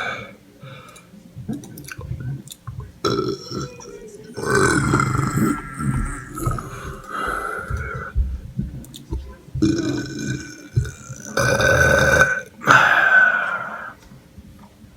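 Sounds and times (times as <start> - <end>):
person burping: 3.0 - 8.2, 9.6 - 14.0.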